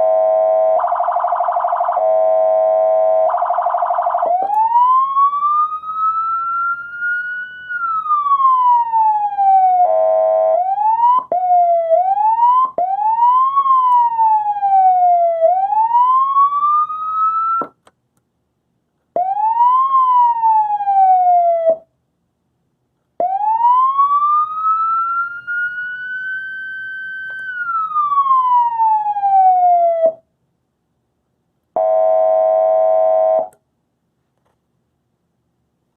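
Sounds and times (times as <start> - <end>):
siren wailing and sweeping: 0.0 - 17.6.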